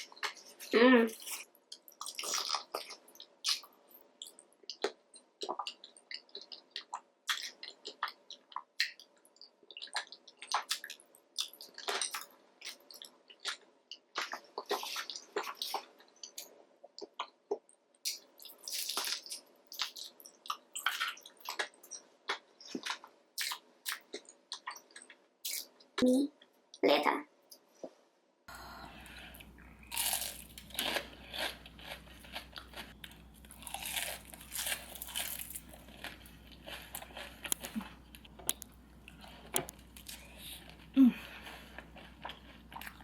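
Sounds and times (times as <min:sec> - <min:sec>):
wet chewing and sucking: 0:29.1 - 0:43.0.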